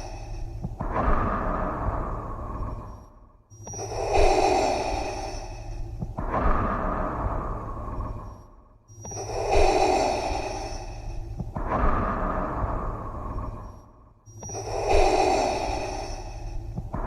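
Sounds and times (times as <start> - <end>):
mechanical respirator breathing: 8.9 - 17.0.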